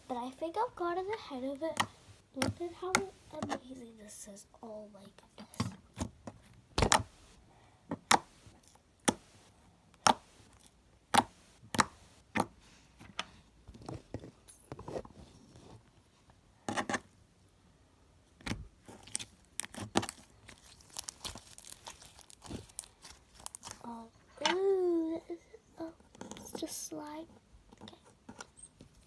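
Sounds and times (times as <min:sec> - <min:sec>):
slime squished by hand: 0:18.8 - 0:23.9.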